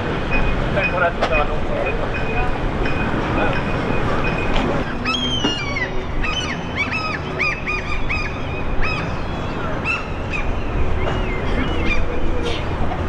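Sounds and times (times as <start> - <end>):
bird honking calls: 0.3 - 13.0.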